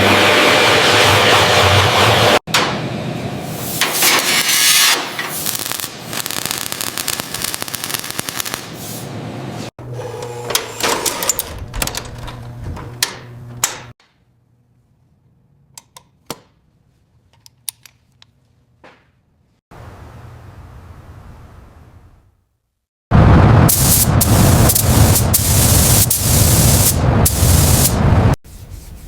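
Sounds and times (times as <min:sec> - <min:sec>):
tool running with hum: 0:09.8 - 0:13.7.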